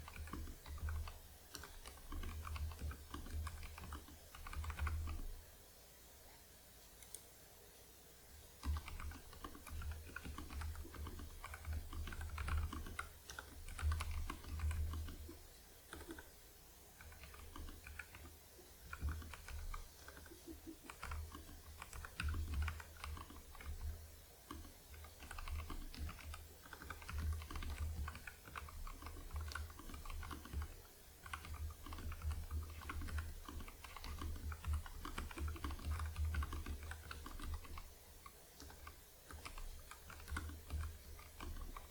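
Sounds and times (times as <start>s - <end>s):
soft mechanical keyboard typing: 0.0s - 5.4s, 7.0s - 7.3s, 8.5s - 16.4s, 17.0s - 41.9s.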